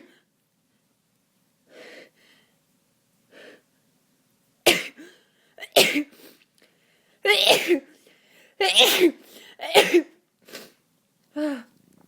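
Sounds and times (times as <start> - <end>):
soft breaths: 1.6 - 3.8, 5.0 - 7.2
person sneezing: 4.7 - 6.4, 7.3 - 7.9, 8.6 - 10.8.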